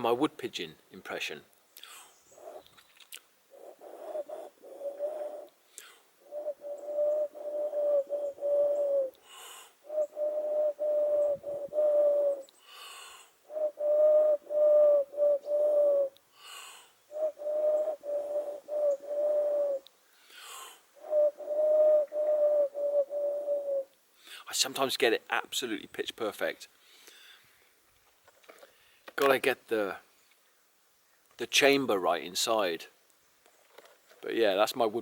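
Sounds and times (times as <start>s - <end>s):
man imitating pigeon coo: 3.5s - 5.5s, 6.2s - 9.2s, 9.9s - 12.4s, 13.5s - 16.2s, 17.1s - 19.8s, 21.0s - 23.9s
breath drawn: 5.7s - 6.1s, 9.2s - 9.8s, 12.6s - 13.4s, 16.3s - 17.0s, 20.1s - 20.8s.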